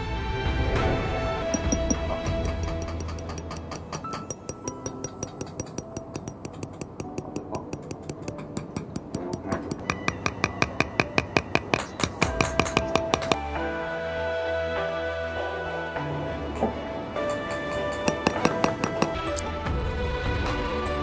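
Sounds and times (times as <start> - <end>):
small hammer tapping sheet metal: 1.4 - 13.4, 16.2 - 19.4.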